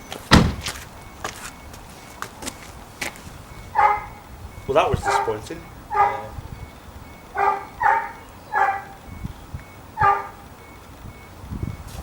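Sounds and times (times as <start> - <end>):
dog barking: 3.7 - 4.2, 5.0 - 6.3, 7.4 - 9.0, 10.0 - 10.4.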